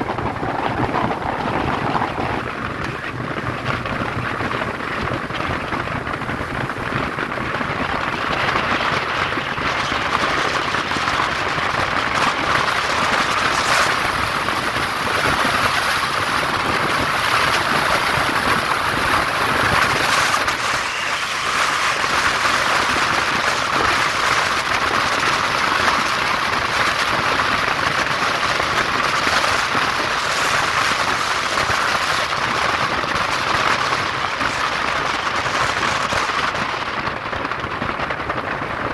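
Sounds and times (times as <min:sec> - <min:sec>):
road and wind noise: 0:00.0 - 0:38.9.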